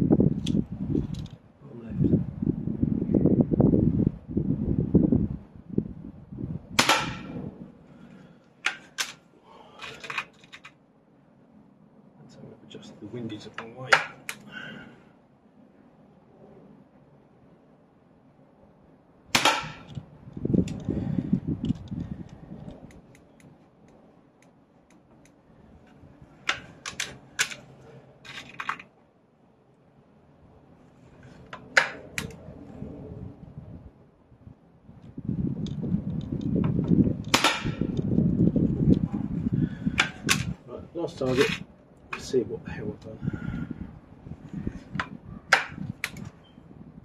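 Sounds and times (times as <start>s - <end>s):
low rumbling noise: 0.0s - 8.4s, 14.0s - 42.0s
air rifle crack: 6.8s - 10.4s, 13.9s - 14.8s, 19.3s - 20.0s, 31.5s - 32.4s, 37.3s - 38.0s, 39.6s - 40.6s
air rifle clicks and clacks: 8.6s - 9.2s, 26.4s - 28.9s, 31.5s - 32.4s, 40.0s - 40.6s, 45.0s - 46.3s.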